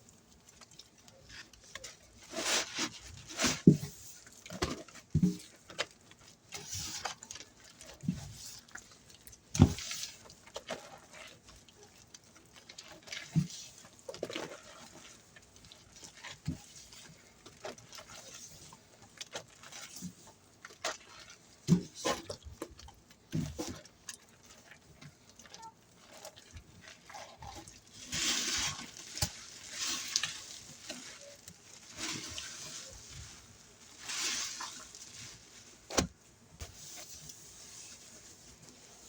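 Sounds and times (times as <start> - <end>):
hands squelching soapy paste: 0.0 - 39.0
sponge squeezing with hiss: 1.5 - 5.7, 26.1 - 39.0.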